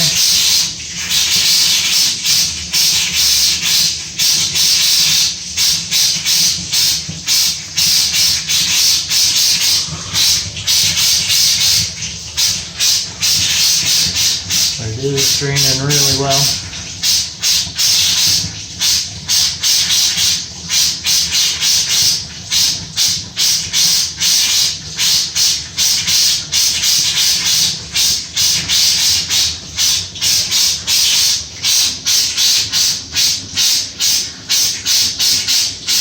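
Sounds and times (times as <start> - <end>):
drain gurgling and slurping: 0.0 - 36.0.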